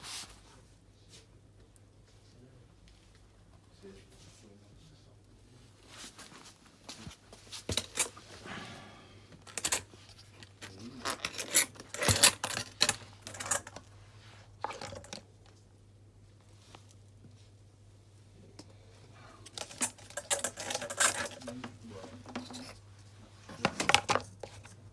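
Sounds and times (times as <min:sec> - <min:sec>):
plastic parts clicking and knocking: 0:09.5 - 0:13.8, 0:14.6 - 0:15.2, 0:19.4 - 0:22.8, 0:23.6 - 0:24.8.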